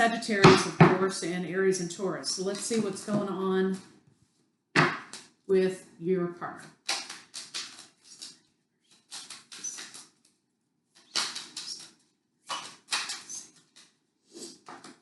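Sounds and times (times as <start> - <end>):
cards being shuffled: 6.7 - 15.0.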